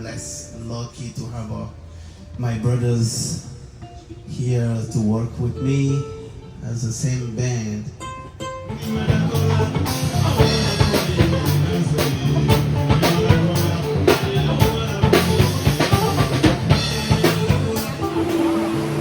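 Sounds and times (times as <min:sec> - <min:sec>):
live band playing: 0:08.4 - 0:19.0
bass line: 0:08.7 - 0:19.0
drum kit beat: 0:08.7 - 0:19.0.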